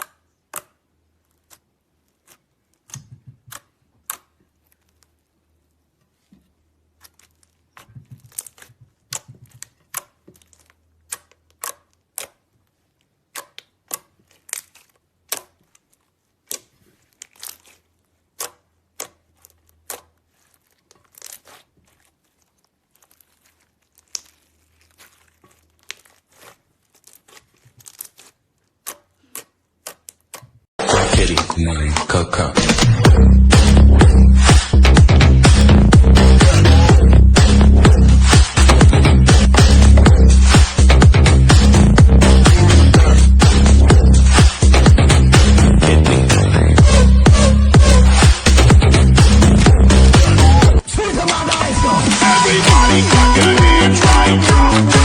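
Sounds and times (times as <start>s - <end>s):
slime popping and crackling: 6.9s - 30.6s, 32.6s - 46.0s.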